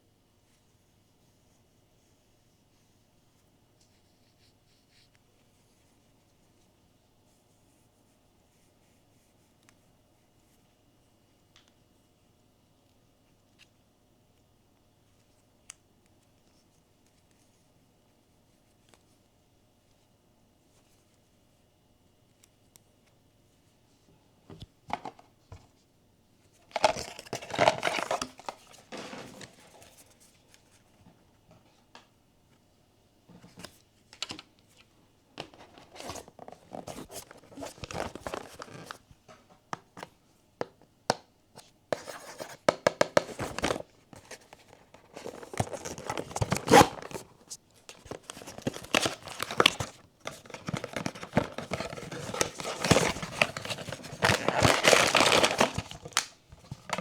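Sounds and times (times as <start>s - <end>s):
paper and foil tearing and crinkling: 26.8s - 29.1s, 45.0s - 47.3s, 48.1s - 57.0s.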